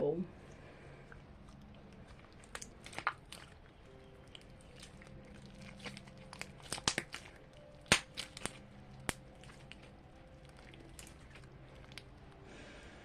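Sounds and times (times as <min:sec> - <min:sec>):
slime sticky clicks and pops: 0:02.4 - 0:03.6, 0:05.6 - 0:09.9.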